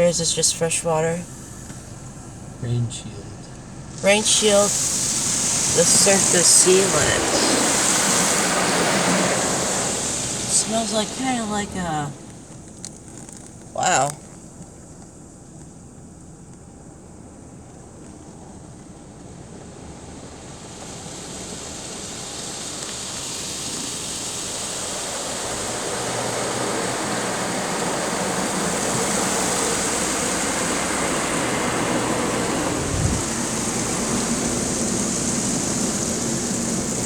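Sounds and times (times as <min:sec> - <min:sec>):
car wash spray rushing: 0:00.0 - 0:37.0.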